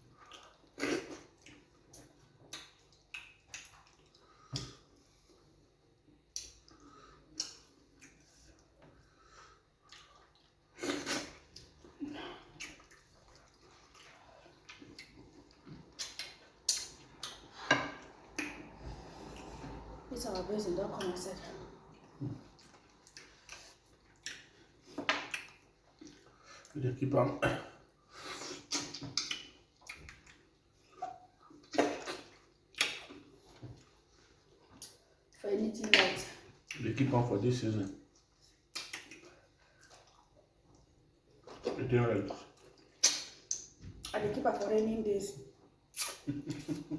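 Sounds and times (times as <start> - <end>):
wet slurping and lip smacks: 28.4 - 33.2, 45.9 - 46.7.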